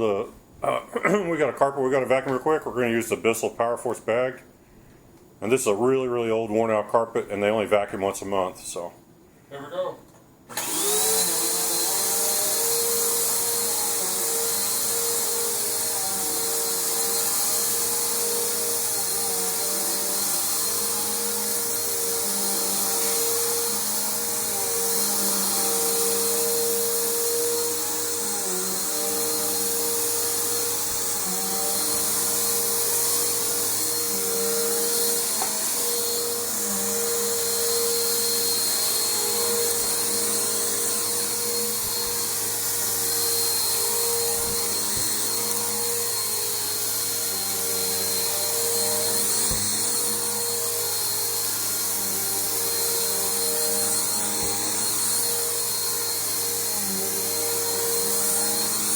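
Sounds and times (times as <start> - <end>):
vacuum cleaner on carpet: 10.5 - 58.9.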